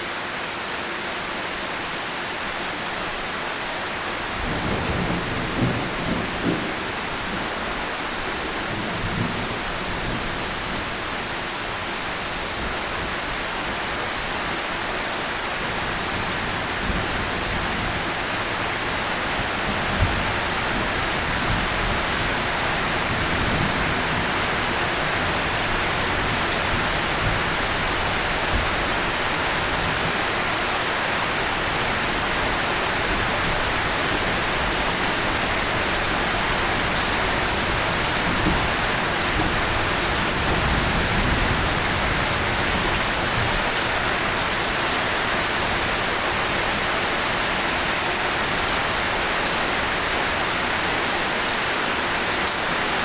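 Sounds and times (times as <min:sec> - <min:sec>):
steady rain hiss: 0:00.0 - 0:53.0.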